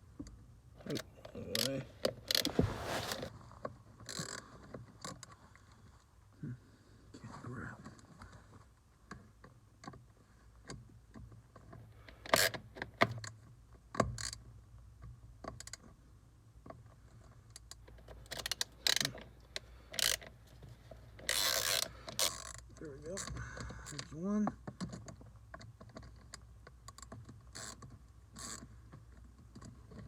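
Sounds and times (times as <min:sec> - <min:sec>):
scraping on plastic: 0:00.8 - 0:03.4.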